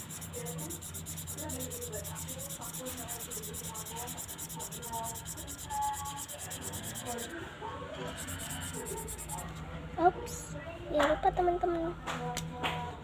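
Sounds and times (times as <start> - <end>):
marker scrubbing on paper: 0.0 - 7.3, 8.1 - 9.4
steady low hum: 0.0 - 7.4, 8.0 - 9.5.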